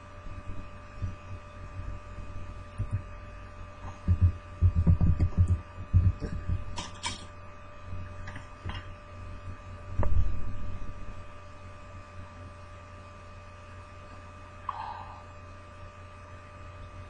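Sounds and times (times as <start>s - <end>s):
electrical hum: 0.0s - 17.0s
low thumps: 4.0s - 6.7s.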